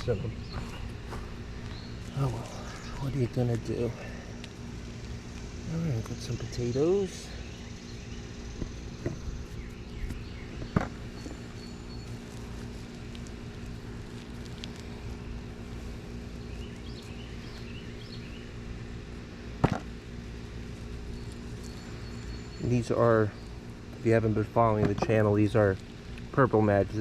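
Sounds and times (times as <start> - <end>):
steady low hum: 0.0 - 27.0
sharp knocks: 19.6 - 19.9.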